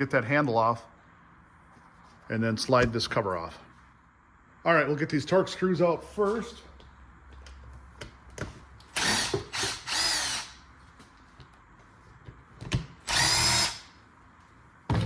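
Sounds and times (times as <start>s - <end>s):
power drill whirring: 8.9s - 10.6s, 13.0s - 13.9s.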